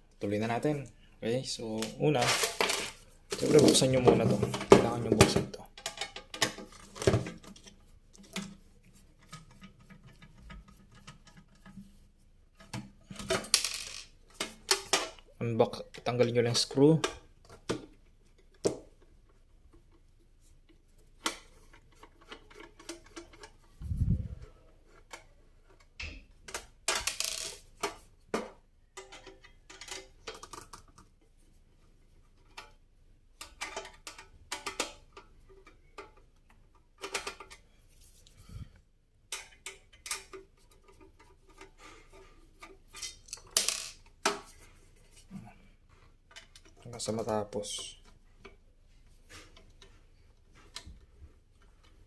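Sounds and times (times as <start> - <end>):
small clicks and scrapes: 18.3 - 28.1.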